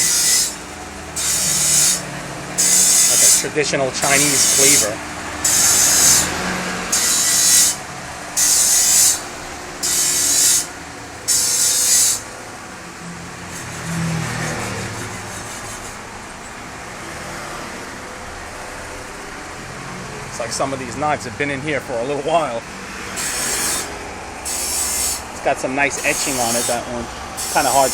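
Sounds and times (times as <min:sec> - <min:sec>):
blade scraping on wet grinding stone: 0:00.0 - 0:00.6, 0:01.2 - 0:02.0, 0:02.6 - 0:06.3, 0:06.9 - 0:07.8, 0:08.4 - 0:09.2, 0:09.8 - 0:10.7, 0:11.3 - 0:12.3, 0:14.6 - 0:16.1, 0:23.2 - 0:26.8, 0:27.4 - 0:27.9
steady background noise: 0:00.0 - 0:27.9.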